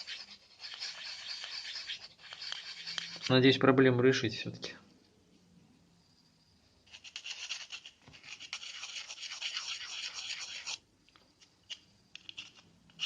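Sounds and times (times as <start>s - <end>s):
file rasping on plastic: 0.0s - 3.3s, 6.9s - 10.8s.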